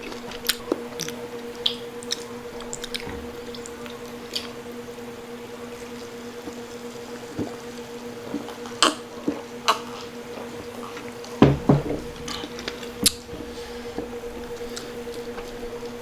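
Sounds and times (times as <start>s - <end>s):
steady low hum: 0.0s - 16.0s
wet chewing with crunches: 0.0s - 16.0s
deep thump: 11.4s - 14.6s.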